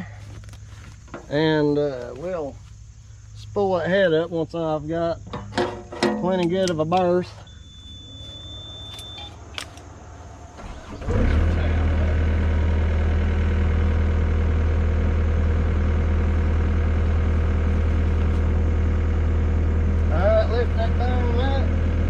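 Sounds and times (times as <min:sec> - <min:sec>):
diesel engine starting and running: 0:06.5 - 0:22.0.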